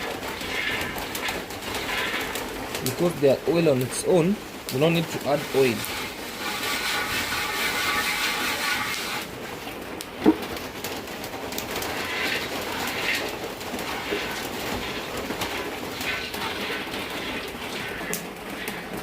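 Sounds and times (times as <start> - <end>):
food frying in a pan: 0.0 - 19.0.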